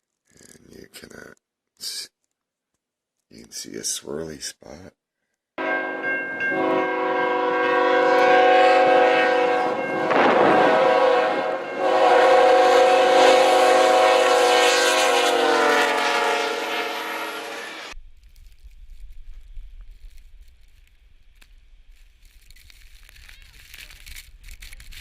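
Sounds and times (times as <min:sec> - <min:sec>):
train air horn chord: 0:05.6 - 0:18.0
rushing noise: 0:09.6 - 0:18.0.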